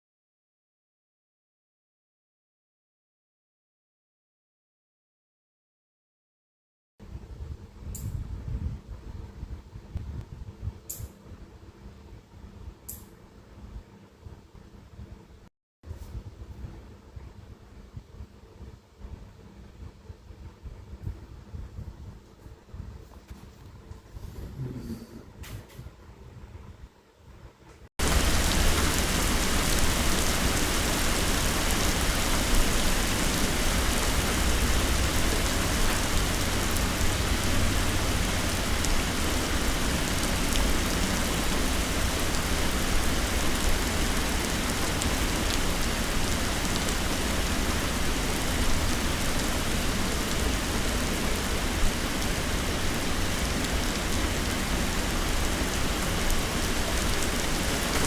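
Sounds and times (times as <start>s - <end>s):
heavy rain pouring: 28.0s - 58.0s.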